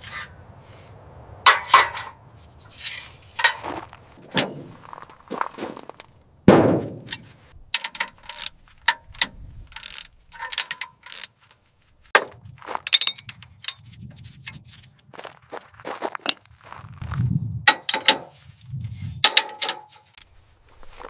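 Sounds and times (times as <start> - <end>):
metal tools clinking and clanging: 1.5 - 6.1, 7.0 - 11.6, 12.7 - 14.0, 16.2 - 16.6, 17.7 - 18.4, 19.2 - 20.4
heavy thud: 6.5 - 7.2.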